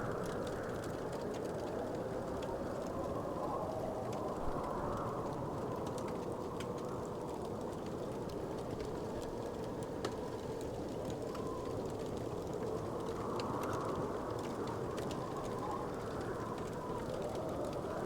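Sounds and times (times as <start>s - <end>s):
wood fire crackling: 0.0s - 18.0s.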